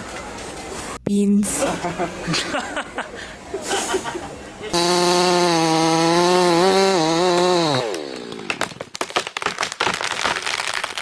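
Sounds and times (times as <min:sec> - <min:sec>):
loud motor-like buzzing drone: 0:04.8 - 0:08.4.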